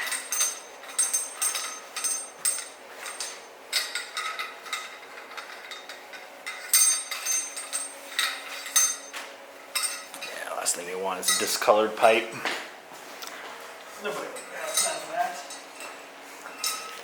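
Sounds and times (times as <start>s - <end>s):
metal parts clinking: 0.0s - 9.2s, 9.8s - 10.4s, 14.4s - 15.9s, 16.6s - 17.0s.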